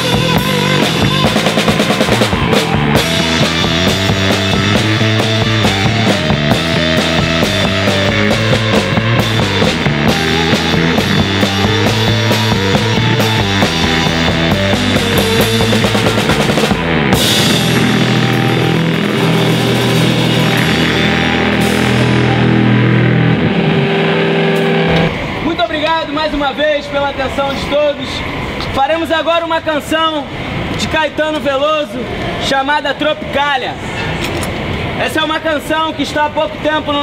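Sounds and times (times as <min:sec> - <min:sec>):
drum kit: 0:00.0 - 0:25.4
rock band playing: 0:00.0 - 0:25.6.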